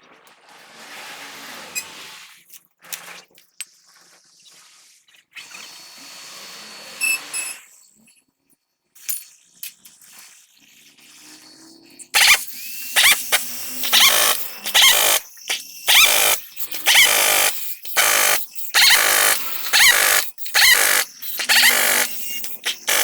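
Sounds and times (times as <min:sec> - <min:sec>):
power tool bursts with high squeal: 0:12.2 - 0:23.0.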